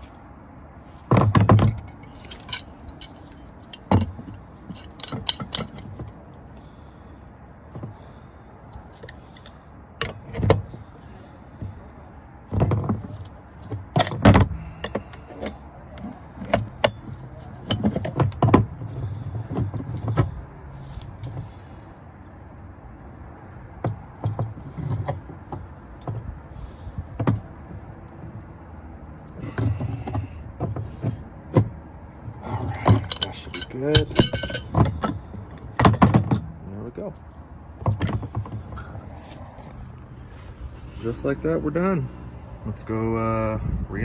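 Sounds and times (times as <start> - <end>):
wrench clanking on metal pipe: 1.3 - 6.0, 32.6 - 35.2.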